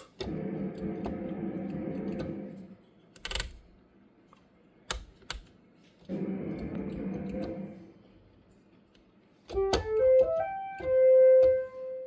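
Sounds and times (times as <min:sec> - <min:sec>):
panel switches and keys clicking: 0:03.2 - 0:03.7, 0:04.8 - 0:05.6, 0:09.5 - 0:11.7
sustained synthesizer note: 0:06.1 - 0:08.2.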